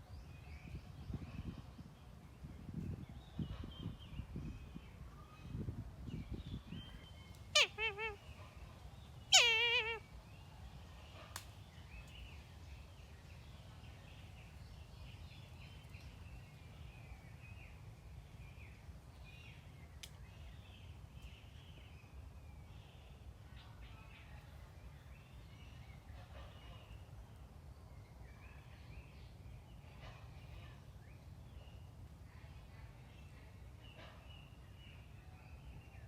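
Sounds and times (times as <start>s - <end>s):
kite calling: 7.6s - 8.2s, 9.3s - 10.0s.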